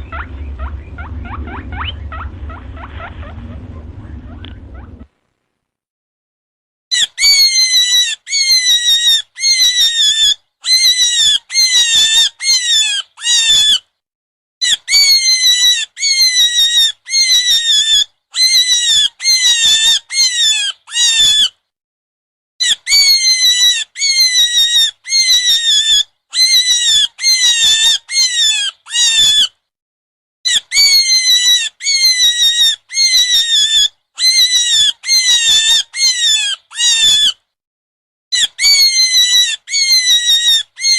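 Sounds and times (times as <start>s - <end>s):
high-pitched animal squeals: 6.9s - 13.8s, 14.6s - 21.6s, 22.6s - 29.6s, 30.5s - 37.4s, 38.3s - 40.9s.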